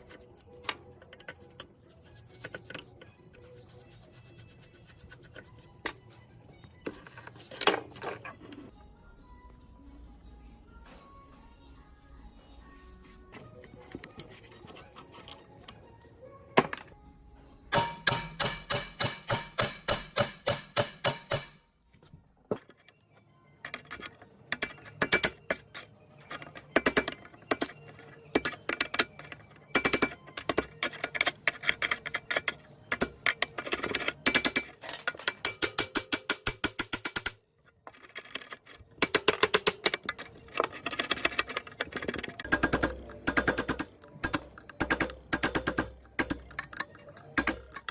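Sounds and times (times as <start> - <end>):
ringing taps on metal: 17.7 - 21.8, 42.4 - 47.9.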